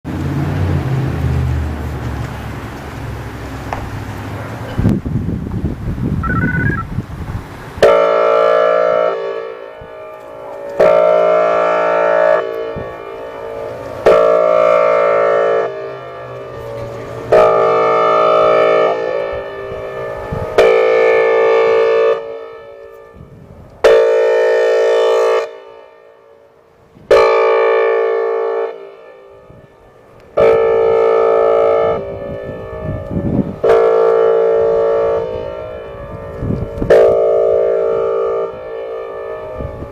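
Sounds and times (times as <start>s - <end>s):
warning siren horn blasts: 6.2s - 6.9s, 7.8s - 39.9s.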